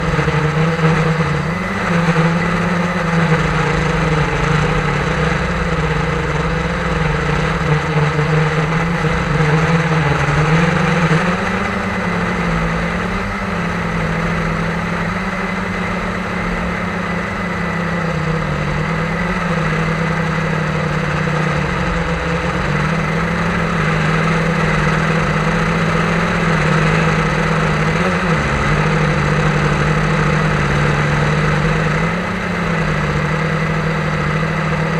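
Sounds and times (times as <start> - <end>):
drone propellers whirring: 0.0 - 34.9.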